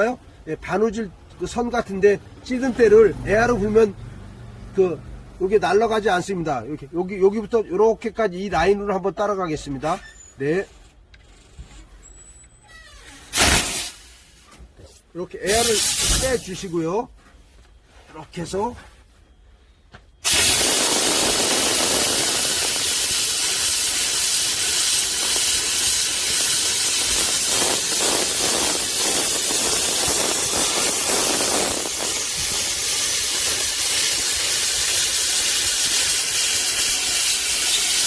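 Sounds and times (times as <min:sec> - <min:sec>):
steam nozzle hissing: 0:13.3 - 0:14.5, 0:15.5 - 0:16.8, 0:20.2 - 0:38.0.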